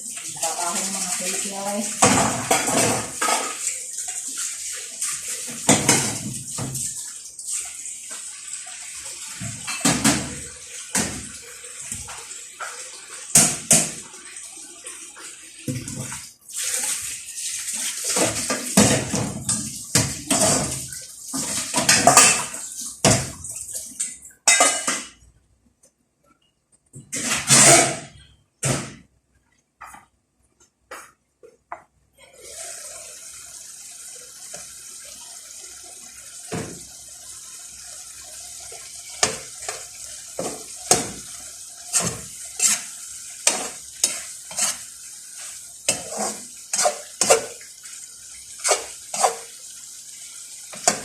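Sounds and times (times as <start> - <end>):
splashing water: 0.0 - 24.3
dishes and pans clattering: 2.0 - 3.7, 5.5 - 6.8, 9.4 - 11.4, 18.1 - 23.4, 24.4 - 25.2, 27.0 - 28.9, 45.9 - 47.6, 48.6 - 49.5.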